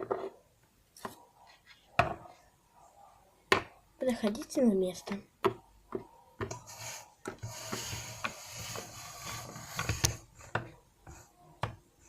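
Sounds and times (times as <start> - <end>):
plastic toys rubbing and scraping: 6.4 - 11.4.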